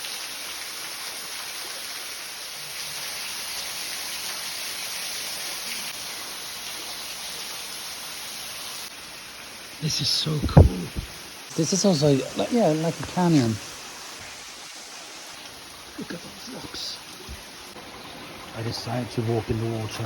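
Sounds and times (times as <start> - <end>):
waterfall rushing: 9.8 - 17.8.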